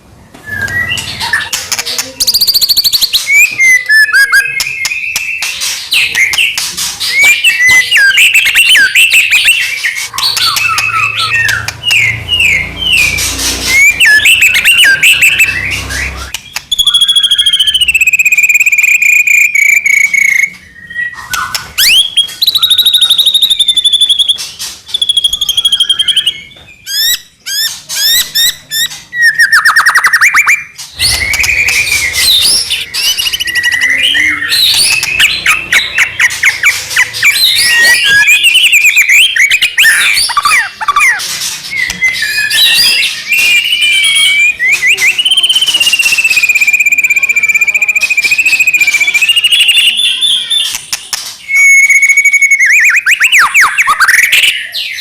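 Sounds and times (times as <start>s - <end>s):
bird singing varied whistles and trills: 0.3s - 55.0s.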